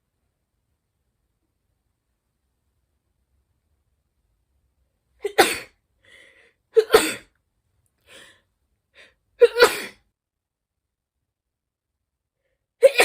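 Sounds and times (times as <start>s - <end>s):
person sneezing: 5.2s - 5.7s, 6.8s - 7.3s, 9.4s - 10.0s
faint short breaths: 6.0s - 6.6s.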